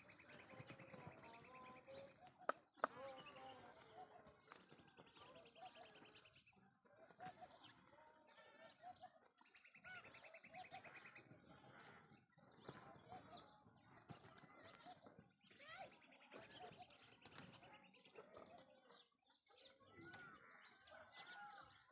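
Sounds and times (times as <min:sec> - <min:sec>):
small birds chirping: 0:00.0 - 0:21.9.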